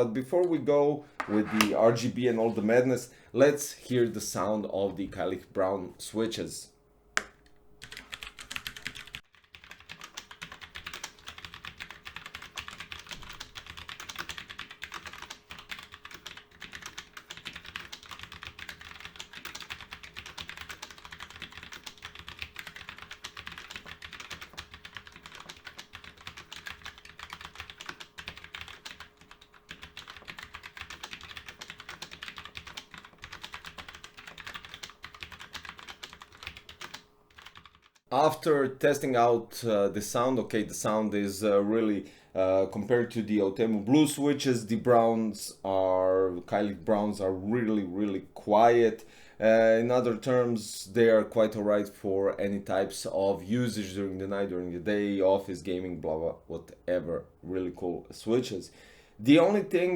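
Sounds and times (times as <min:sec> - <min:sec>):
mechanical keyboard typing: 0:07.8 - 0:38.0.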